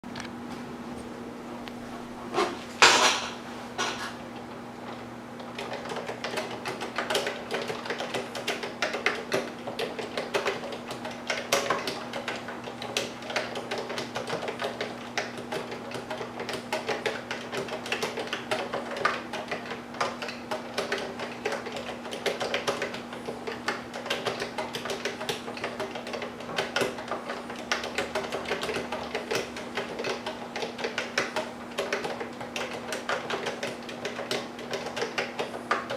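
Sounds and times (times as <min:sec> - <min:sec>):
steady low hum: 0:00.1 - 0:35.9
keyboard keystrokes clacking: 0:05.6 - 0:35.9.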